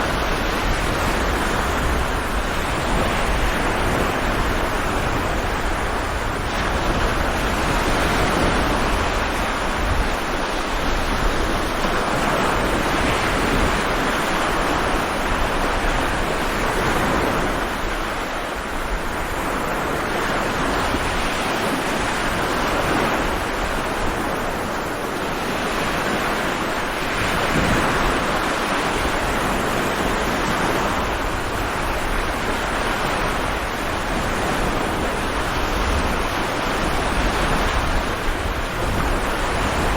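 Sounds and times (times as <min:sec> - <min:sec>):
stormy sea waves breaking: 0:00.0 - 0:39.9
wind noise: 0:00.0 - 0:39.9.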